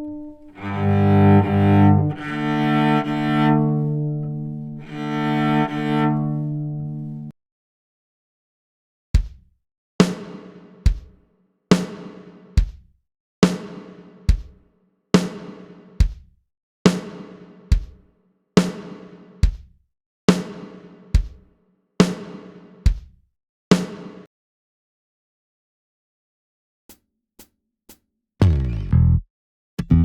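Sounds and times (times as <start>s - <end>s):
bass drum beat: 9.2s - 9.5s, 28.4s - 29.2s, 29.8s - 30.0s.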